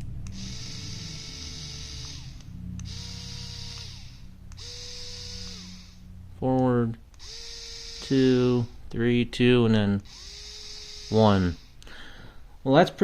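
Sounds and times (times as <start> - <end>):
electric screwdriver motor whine: 0.2 - 6.1, 7.2 - 8.5, 10.0 - 11.8.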